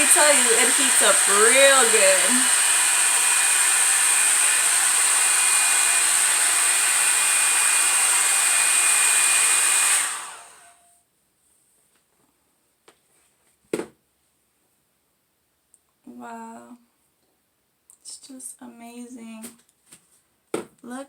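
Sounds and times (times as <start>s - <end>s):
hair dryer blowing with high whine: 0.0s - 10.8s.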